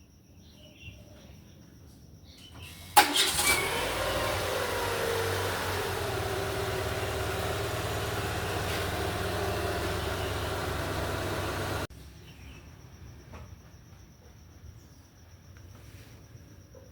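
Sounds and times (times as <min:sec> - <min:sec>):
car engine idling: 0:02.6 - 0:11.9.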